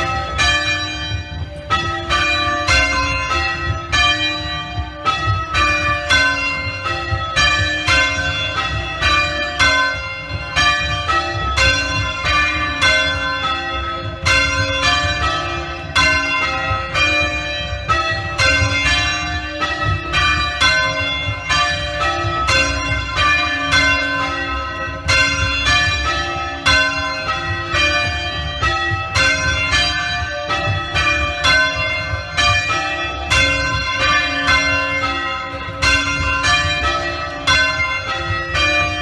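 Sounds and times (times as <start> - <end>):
church bells ringing: 0.0 - 39.0.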